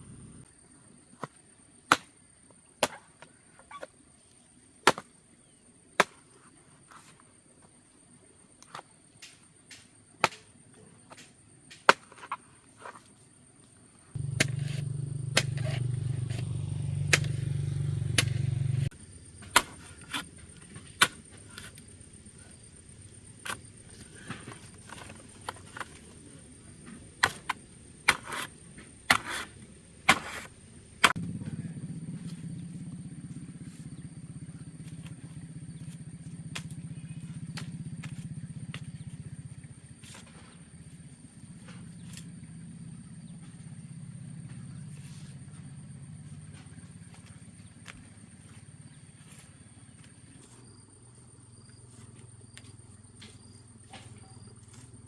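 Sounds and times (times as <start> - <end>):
steady low hum: 0.0 - 0.5, 14.0 - 53.8.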